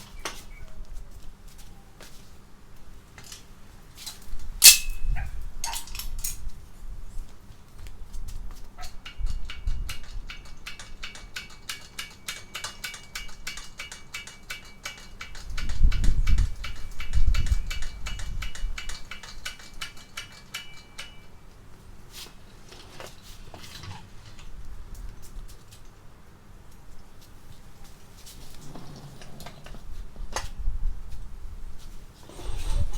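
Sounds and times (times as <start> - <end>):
scattered clinks: 4.6 - 5.2
faint ringing: 4.6 - 5.3.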